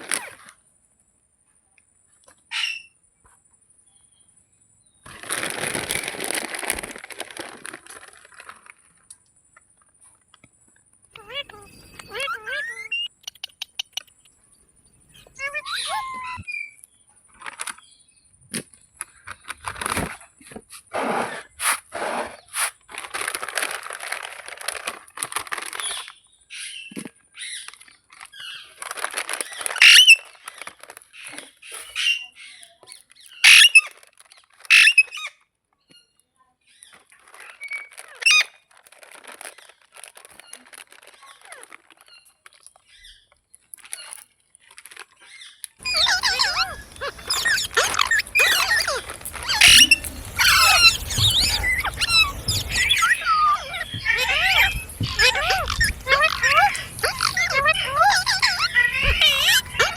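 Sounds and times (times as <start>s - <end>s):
parrot calling shrilly: 2.5s - 3.0s, 11.2s - 14.1s, 15.1s - 16.8s, 29.6s - 30.3s, 33.3s - 34.0s, 34.6s - 35.3s, 37.6s - 38.6s, 45.8s - 59.9s.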